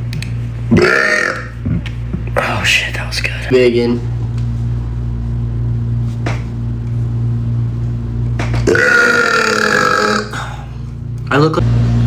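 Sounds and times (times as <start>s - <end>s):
steady low hum: 0.0s - 12.0s
loud drawn-out burp: 0.7s - 1.6s, 8.6s - 10.6s.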